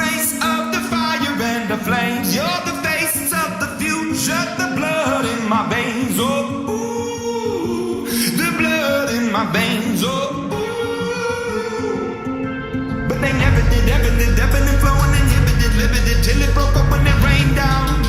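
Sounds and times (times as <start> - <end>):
person singing: 0.0 - 18.0
held chords: 10.3 - 18.0
recurring beat: 12.3 - 18.0.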